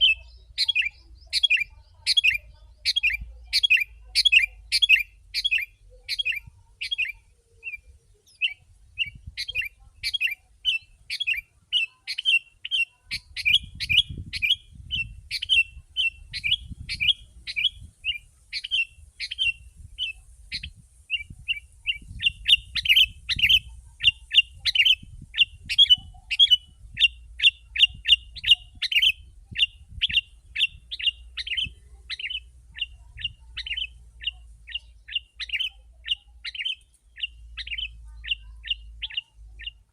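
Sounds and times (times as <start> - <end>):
bulbul chirping song: 0.0 - 39.9.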